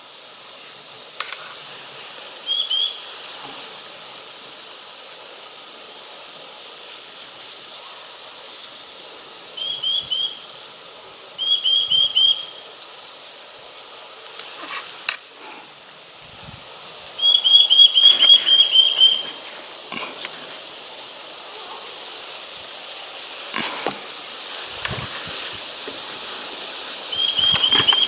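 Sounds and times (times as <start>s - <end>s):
bird whistled notes: 2.4s - 3.1s, 9.6s - 10.5s, 11.4s - 12.6s, 17.2s - 19.4s, 27.0s - 28.0s.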